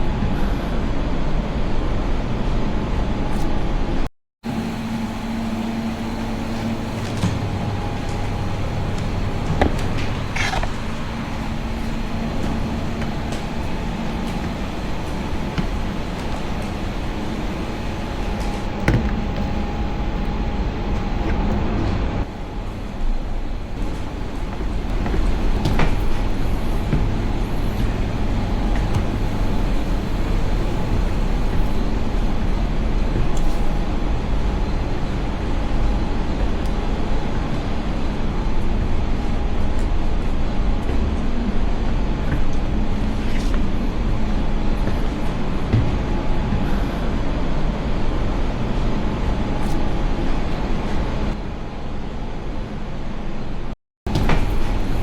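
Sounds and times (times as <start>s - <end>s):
low mechanical rumble: 0.0s - 55.0s.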